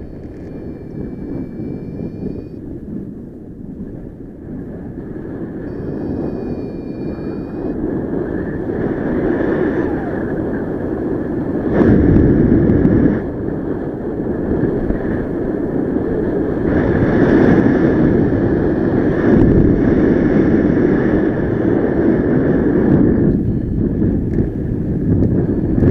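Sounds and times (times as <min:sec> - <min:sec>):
faint steady high tone: 0:00.0 - 0:02.8, 0:05.6 - 0:11.5, 0:23.1 - 0:24.1
wind buffeting microphone: 0:00.0 - 0:25.9.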